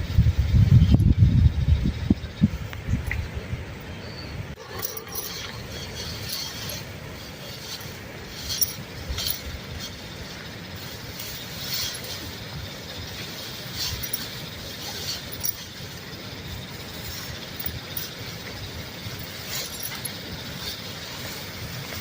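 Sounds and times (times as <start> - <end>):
steady hiss: 2.4 - 22.0
light clinks and taps: 4.6 - 22.0.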